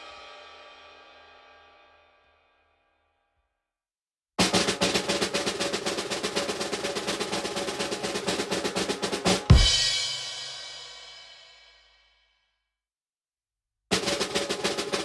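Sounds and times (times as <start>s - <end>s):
snare drum roll: 4.4s - 11.6s, 13.9s - 15.0s.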